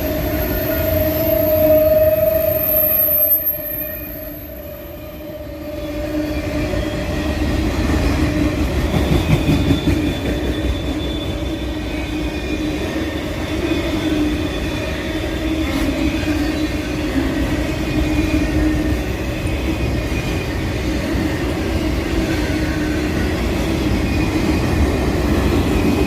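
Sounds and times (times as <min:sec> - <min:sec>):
high squealing tones: 0:00.0 - 0:06.8
freight train rumbling by: 0:00.0 - 0:26.0.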